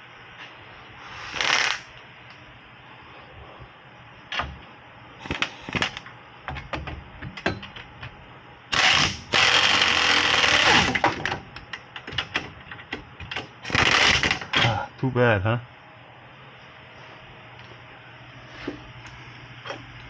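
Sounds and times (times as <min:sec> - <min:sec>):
impact wrench hammering: 0:05.2 - 0:08.0.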